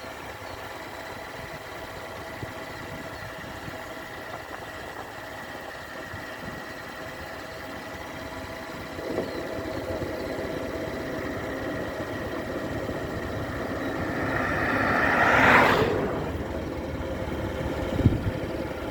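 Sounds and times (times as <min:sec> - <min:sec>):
motorcycle engine running: 0:00.1 - 0:18.9
loud rushing noise: 0:11.5 - 0:18.3.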